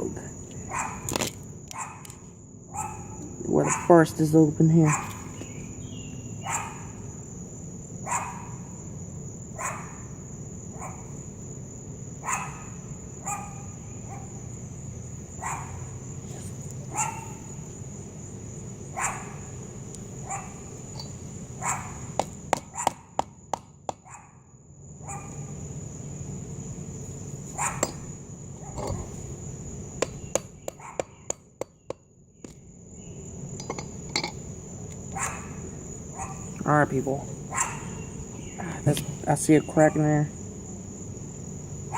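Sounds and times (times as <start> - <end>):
dog barking: 0.7 - 1.0, 1.7 - 2.0, 2.7 - 4.0, 4.8 - 5.3, 6.4 - 6.9, 8.0 - 8.6, 9.6 - 10.0, 10.8 - 11.1, 12.2 - 14.4, 15.4 - 15.9, 16.9 - 17.5, 18.9 - 19.4, 20.2 - 20.7, 21.6 - 22.0, 22.7 - 23.1, 24.0 - 24.4, 25.0 - 25.4, 27.6 - 27.9, 30.8 - 31.1, 35.1 - 36.5, 37.5 - 38.0.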